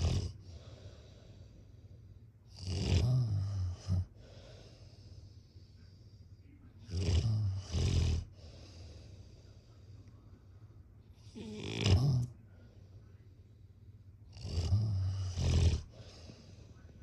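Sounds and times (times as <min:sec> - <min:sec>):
person snoring: 0:11.3 - 0:12.3, 0:14.4 - 0:16.2.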